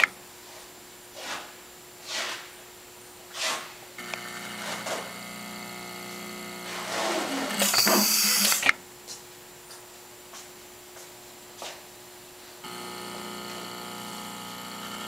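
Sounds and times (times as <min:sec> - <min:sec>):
machine motor whine: 0:04.0 - 0:08.7, 0:12.6 - 0:15.0.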